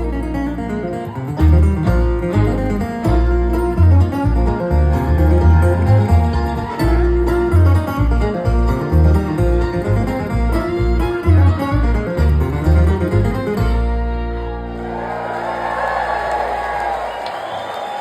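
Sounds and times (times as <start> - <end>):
bluegrass string band: 0.0 - 15.3
crowd cheering: 0.5 - 3.0, 3.7 - 8.1, 14.3 - 18.0.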